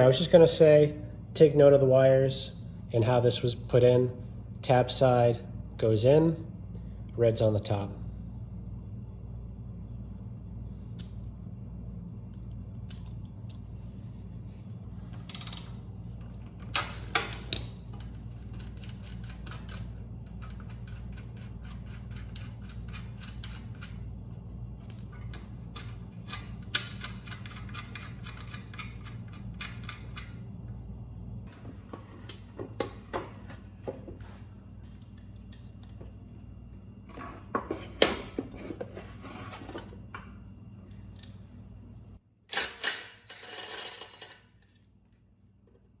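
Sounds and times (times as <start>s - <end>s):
steady low hum: 0.0s - 42.5s
metal tools clicking and clinking: 15.1s - 15.9s.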